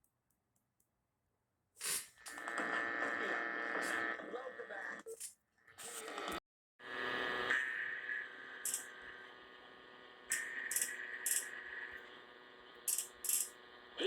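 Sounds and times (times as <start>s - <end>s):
radio hiss: 10.2s - 14.0s.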